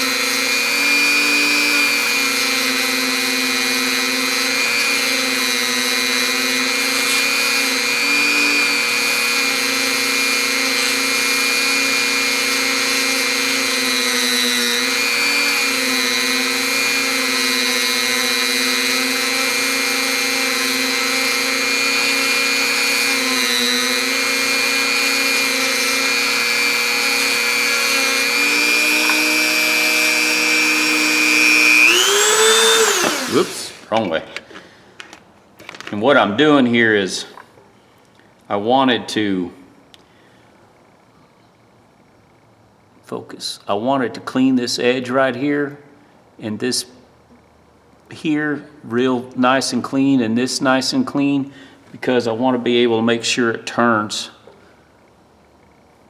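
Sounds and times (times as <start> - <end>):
high-speed power tool grinding metal: 0.0 - 33.9.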